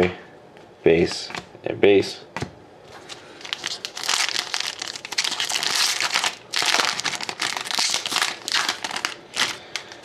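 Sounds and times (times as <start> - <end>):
card pack wrapper tearing: 3.4 - 10.0.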